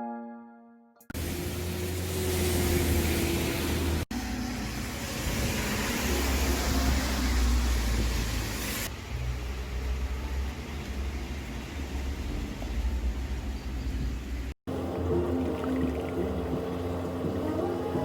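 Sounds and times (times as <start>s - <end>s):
heavy rain hiss: 1.2s - 12.6s
car passing on wet street: 1.2s - 17.7s.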